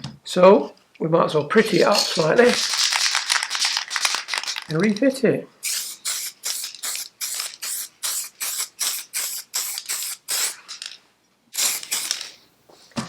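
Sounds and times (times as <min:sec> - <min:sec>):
spray paint can hissing: 0:02.5 - 0:04.7, 0:05.6 - 0:10.9, 0:11.6 - 0:12.4.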